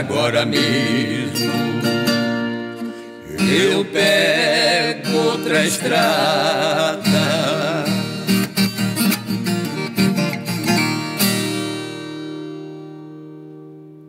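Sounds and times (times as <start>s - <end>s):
acoustic guitars playing: 0.0s - 14.0s.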